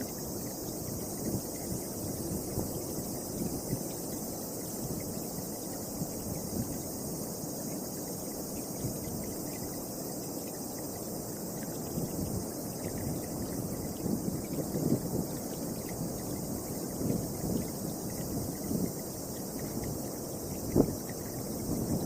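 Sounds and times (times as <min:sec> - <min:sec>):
insects chirring: 0:00.0 - 0:22.0
wind buffeting microphone: 0:00.1 - 0:07.2, 0:11.6 - 0:22.0.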